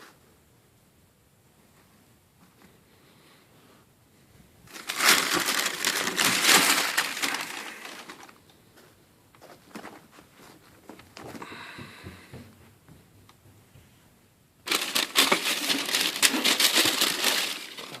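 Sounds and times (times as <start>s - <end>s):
packaging crinkling: 4.7s - 8.4s, 14.7s - 18.0s.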